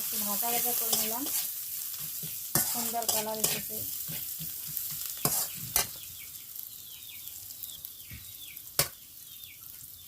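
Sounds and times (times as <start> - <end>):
spices sizzling in hot oil: 0.0 - 10.0
bird chirping: 5.0 - 10.0.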